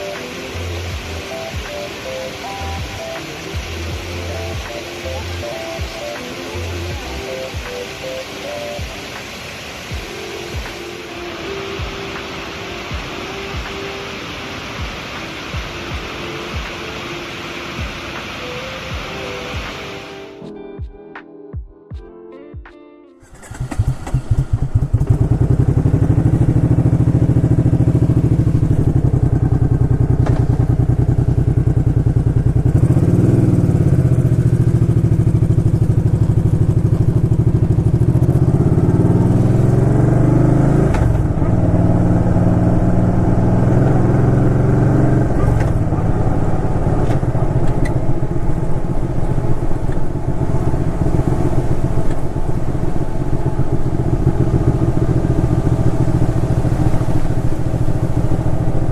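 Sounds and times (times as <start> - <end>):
motorcycle engine revving: 23.2 - 58.9.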